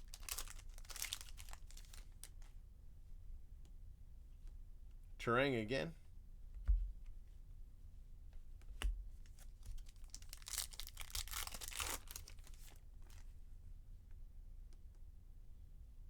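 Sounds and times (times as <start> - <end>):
wrapper tearing and crinkling: 0.0 - 2.5, 9.3 - 13.2.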